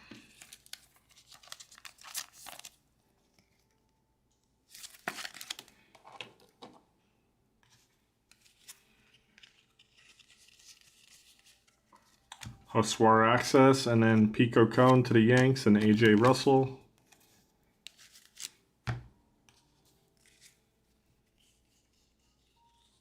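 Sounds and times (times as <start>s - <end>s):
card packs crinkling and tearing: 0.2s - 3.7s, 4.7s - 6.4s, 8.3s - 12.6s, 14.7s - 17.2s, 17.9s - 18.6s.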